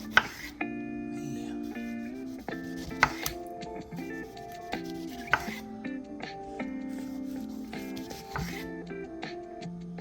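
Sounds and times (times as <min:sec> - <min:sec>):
knife cutting on cutting board: 0:00.0 - 0:00.6, 0:01.2 - 0:05.7, 0:06.9 - 0:08.7
background music of held notes: 0:00.0 - 0:10.0.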